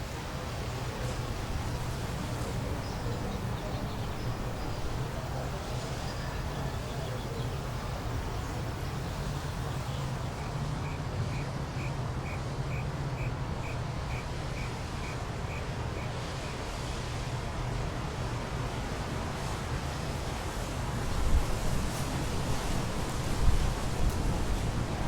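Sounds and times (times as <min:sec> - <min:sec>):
background hiss: 0:00.0 - 0:16.6
steady low hum: 0:00.0 - 0:16.6.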